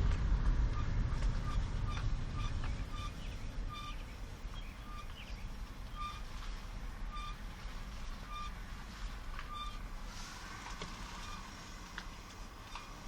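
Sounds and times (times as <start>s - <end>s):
car rolling over road rumble: 0.0s - 6.7s
short high brake squeak: 0.8s - 4.0s, 5.9s - 6.3s, 9.5s - 9.8s, 11.0s - 11.6s.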